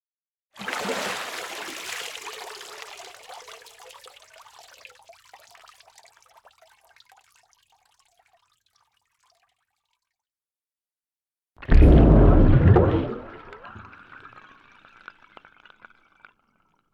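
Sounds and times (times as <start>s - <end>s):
water rushing and gurgling: 11.7s - 14.0s.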